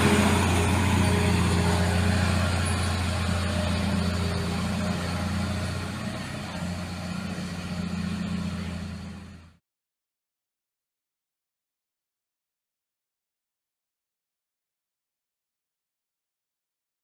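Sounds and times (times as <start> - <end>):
heavy vehicle engine droning: 0.0 - 9.6.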